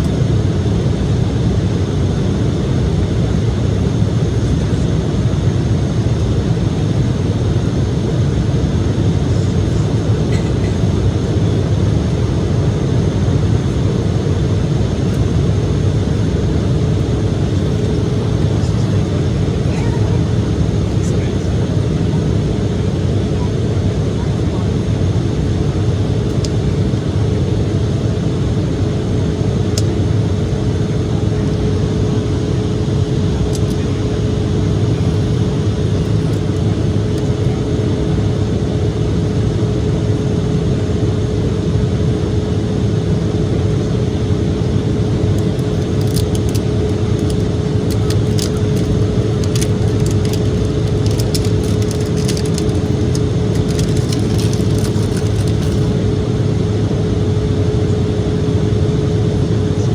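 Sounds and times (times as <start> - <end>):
airliner cabin engine drone: 0.0 - 59.9
light clicks and rattles: 45.6 - 55.9.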